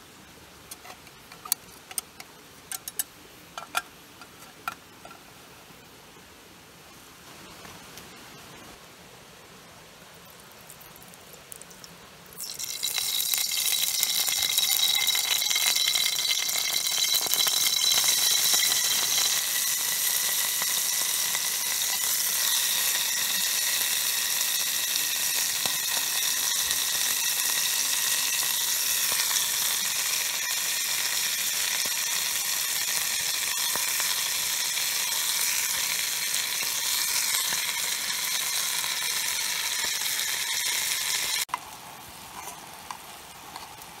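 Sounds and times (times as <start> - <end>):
food sizzling in hot oil: 10.7 - 41.6.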